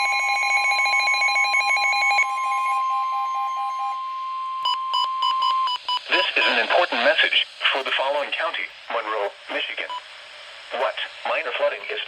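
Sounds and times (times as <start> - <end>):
steady high alarm tone: 0.0 - 6.8
slower series of beeps: 1.3 - 6.7.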